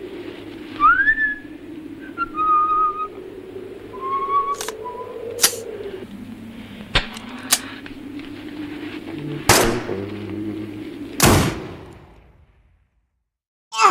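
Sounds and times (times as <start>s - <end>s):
steady low hum: 0.0s - 12.2s
light clicks: 4.6s - 4.8s, 5.4s - 5.6s, 7.0s - 8.0s
toy gun bangs: 5.4s - 5.6s.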